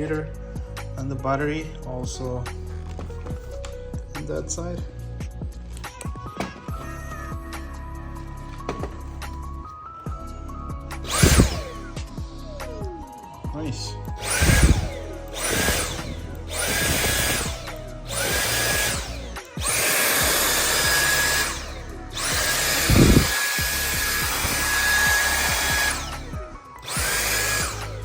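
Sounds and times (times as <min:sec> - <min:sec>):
vacuum motor whining: 0:05.7 - 0:12.3, 0:14.1 - 0:28.0.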